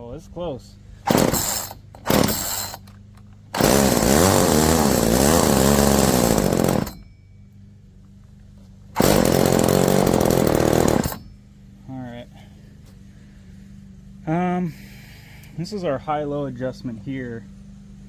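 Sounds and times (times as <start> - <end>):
two-stroke engine idling and revving: 1.0 - 7.0, 8.9 - 11.4.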